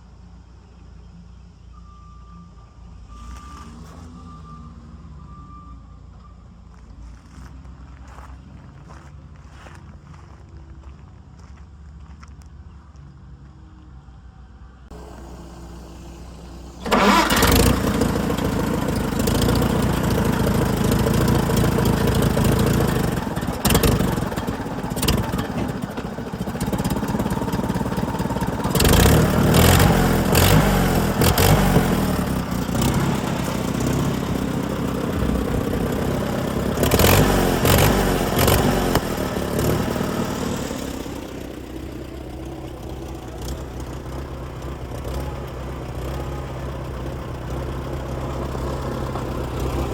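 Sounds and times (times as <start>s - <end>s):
tractor engine starting and running: 14.9s - 49.9s.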